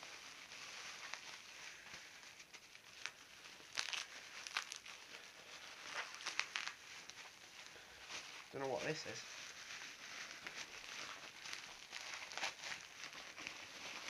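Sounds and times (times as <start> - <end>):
packing paper rustling and crumpling: 0.0 - 14.0.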